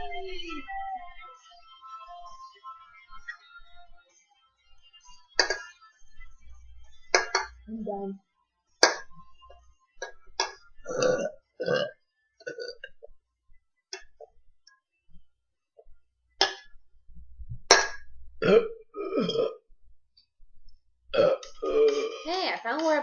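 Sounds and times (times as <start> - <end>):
person burping: 10.4 - 13.0, 17.7 - 19.6, 21.1 - 22.3
throat noises: 17.7 - 19.6, 21.1 - 22.4.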